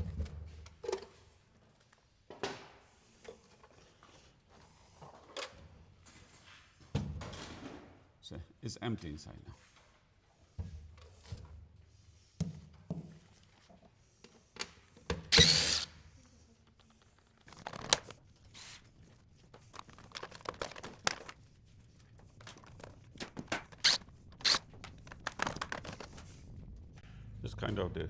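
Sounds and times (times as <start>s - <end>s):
loud metal scrape: 15.4s - 15.9s, 23.8s - 24.6s
metal parts clicking and knocking: 23.4s - 25.9s
metal parts rattling: 23.7s - 24.6s.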